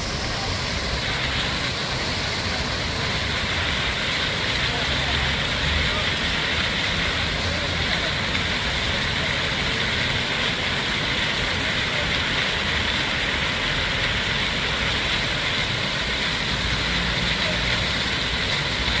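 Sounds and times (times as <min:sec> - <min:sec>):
water fountain splashing: 0:00.0 - 0:19.0.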